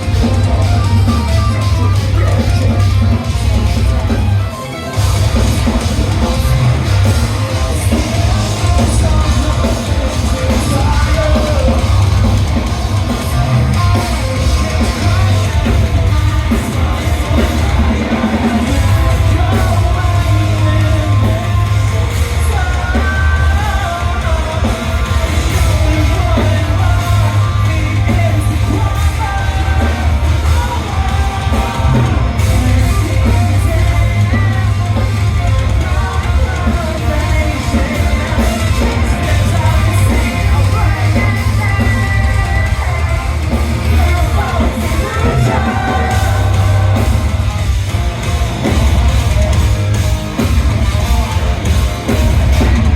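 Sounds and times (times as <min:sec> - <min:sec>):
live heavy rock band: 0:00.0 - 0:52.9
yelled singing: 0:00.0 - 0:52.9.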